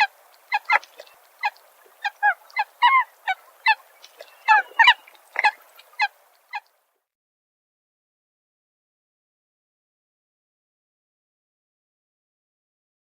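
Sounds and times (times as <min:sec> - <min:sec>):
plovers calling: 0:00.0 - 0:06.7.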